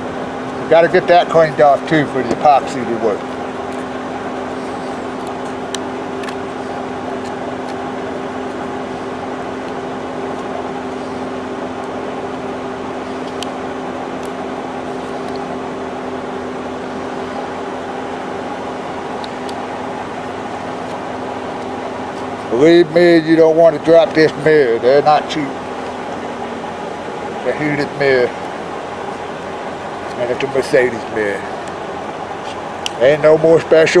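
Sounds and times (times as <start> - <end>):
mechanical hum of fan: 0.0 - 34.0.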